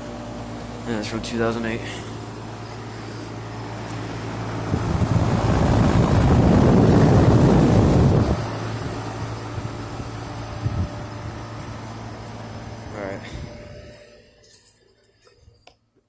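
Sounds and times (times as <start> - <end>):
air conditioner unit humming: 0.0 - 16.0
air buffeting microphone: 2.8 - 11.7.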